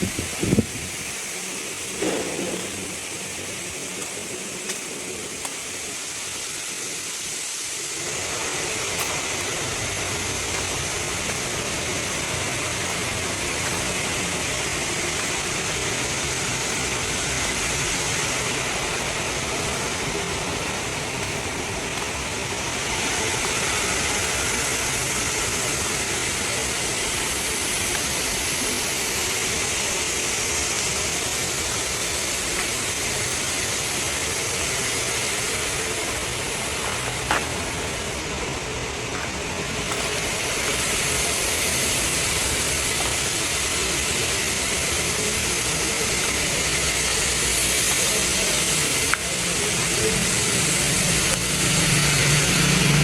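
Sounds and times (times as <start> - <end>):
heavy machinery running with hiss: 0.0 - 53.0
low engine rumble: 0.0 - 53.0.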